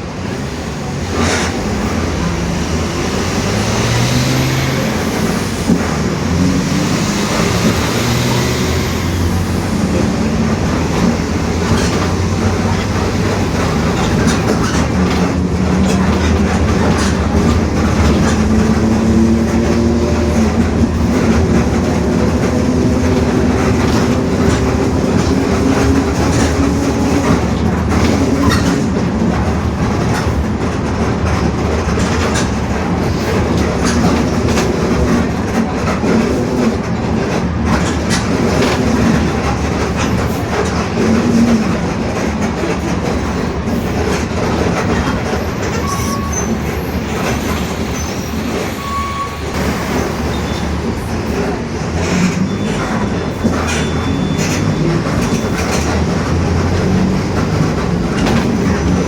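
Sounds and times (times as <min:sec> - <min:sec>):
bus body rattles and clicks: 0:00.0 - 0:59.0
bus differential whining: 0:00.0 - 0:59.0
diesel engine running: 0:01.6 - 0:30.2.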